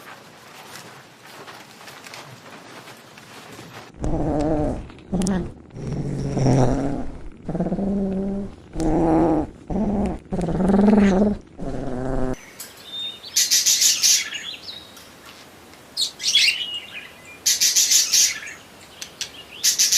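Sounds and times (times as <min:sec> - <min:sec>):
small birds chirping: 0:16.0 - 0:19.9.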